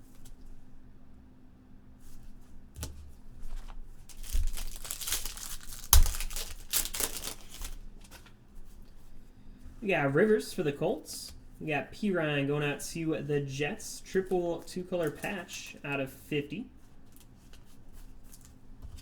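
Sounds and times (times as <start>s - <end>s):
plastic wrapper crinkling and tearing: 3.6s - 8.4s, 14.6s - 15.8s, 17.0s - 18.6s.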